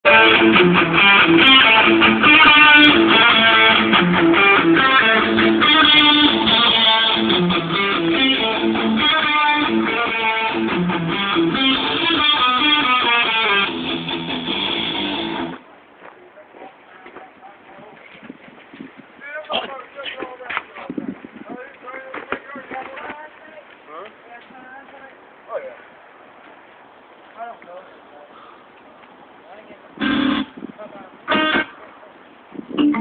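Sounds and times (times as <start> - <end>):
bass line: 0.0 - 15.6, 32.7 - 33.0
strummed guitar: 0.0 - 15.6, 30.0 - 30.6, 31.3 - 31.8, 32.7 - 33.0.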